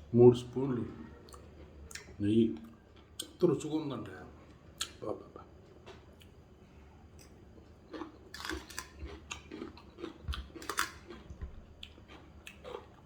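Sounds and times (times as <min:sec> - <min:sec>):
person chewing food: 0:07.1 - 0:13.0.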